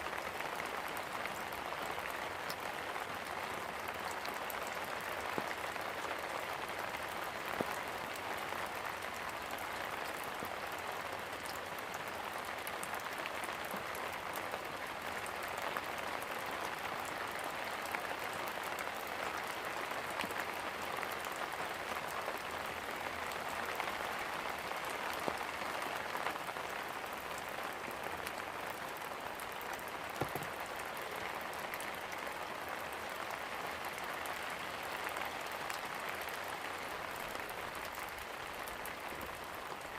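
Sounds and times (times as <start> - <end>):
steady rain hiss: 0.0 - 39.9
single raindrops tapping: 30.1 - 30.7.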